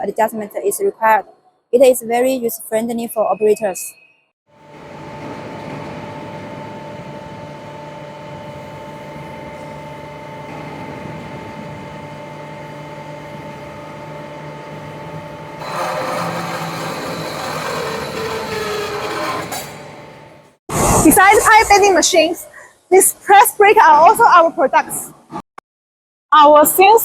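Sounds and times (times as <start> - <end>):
pipe bending machine motor whine: 4.6 - 20.6
rough metalworking noise: 14.5 - 22.0.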